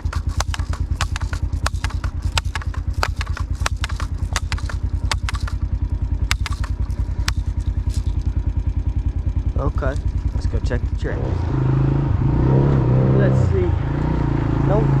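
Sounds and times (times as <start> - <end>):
sharp clicks and rattles: 0.0 - 11.2
small engine idling: 0.0 - 12.1, 13.3 - 15.0.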